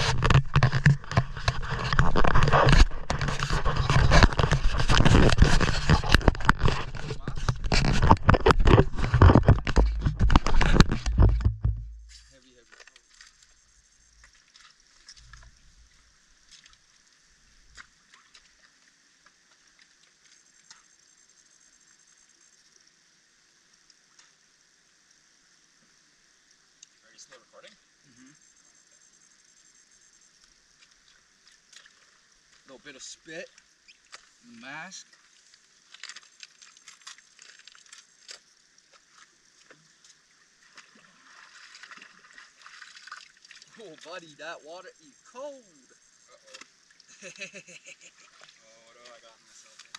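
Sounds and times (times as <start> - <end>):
seawater sloshing: 0.0 - 12.3, 35.0 - 44.2
small clicks and crackles: 0.0 - 15.7, 35.0 - 44.2, 48.4 - 49.9
faint steady hiss: 0.0 - 49.9.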